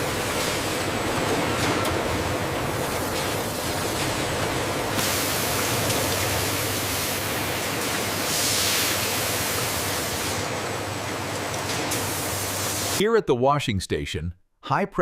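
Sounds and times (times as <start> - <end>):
machinery hissing: 2.4 - 10.5.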